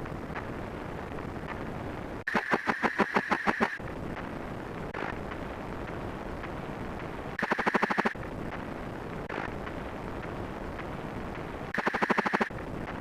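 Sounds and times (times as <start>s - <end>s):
steady rumbling noise: 0.0s - 13.0s
rapid pulses with high tone: 2.3s - 3.8s, 7.4s - 8.2s, 11.7s - 12.6s.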